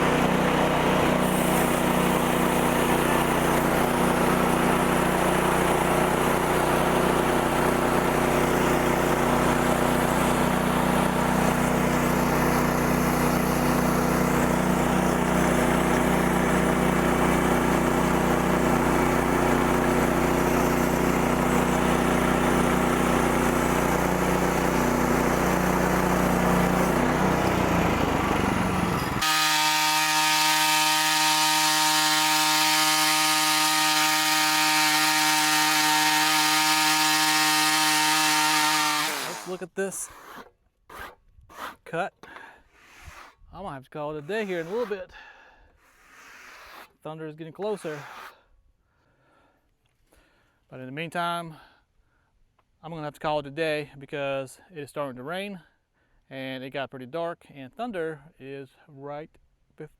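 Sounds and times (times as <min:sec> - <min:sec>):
gas engine running steadily: 0:00.0 - 0:33.7.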